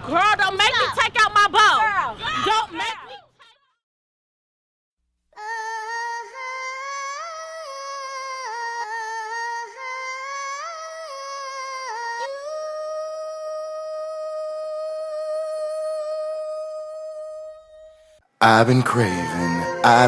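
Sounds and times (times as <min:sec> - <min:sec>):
person humming a slow melody: 0:05.4 - 0:18.2, 0:19.0 - 0:20.0.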